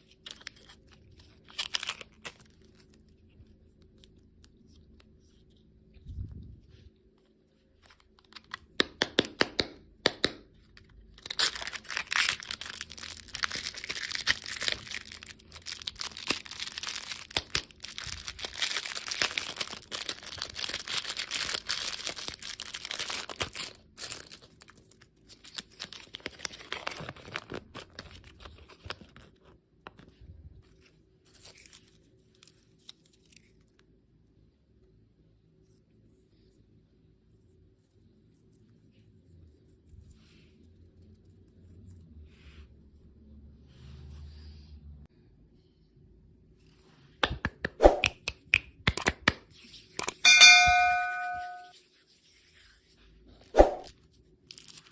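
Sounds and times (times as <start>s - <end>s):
candy packaging tearing and crinkling: 0.0s - 4.3s, 10.7s - 29.4s, 31.3s - 33.8s, 54.4s - 54.9s.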